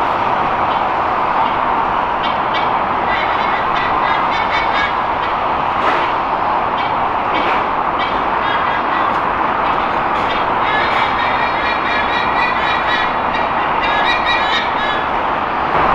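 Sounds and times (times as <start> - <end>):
expressway traffic roar: 0.0 - 15.9
sea eagles honking calls: 8.0 - 15.2.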